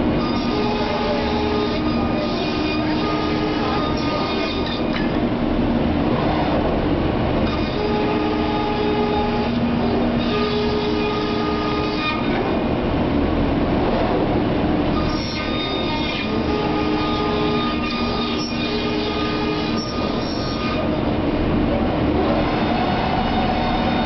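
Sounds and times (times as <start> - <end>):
high machine tones: 0.0 - 5.3, 7.4 - 12.4
router machine running: 0.0 - 24.0.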